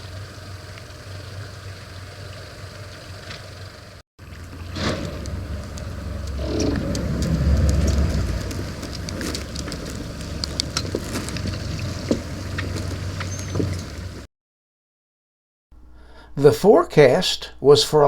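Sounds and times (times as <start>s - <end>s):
engine idling: 0.0s - 14.3s
knocks and clatter: 4.3s - 14.2s.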